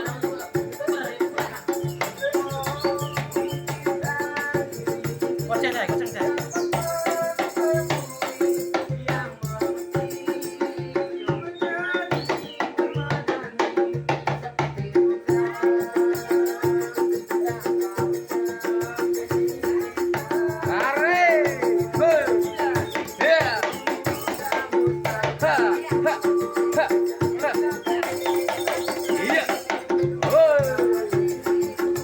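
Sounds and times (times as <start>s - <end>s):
shaker rattle: 0.0s - 8.9s, 15.4s - 32.0s
person singing with vibrato: 0.0s - 32.0s.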